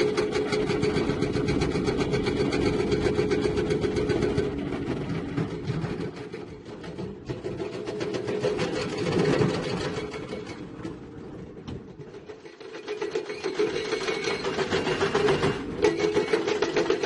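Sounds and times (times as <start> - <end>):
diesel engine clattering: 0.0 - 12.4.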